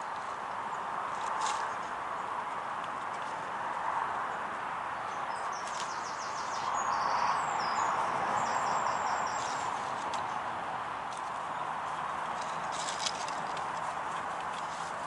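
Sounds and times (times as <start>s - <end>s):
birds chirping and trilling: 5.0s - 10.5s.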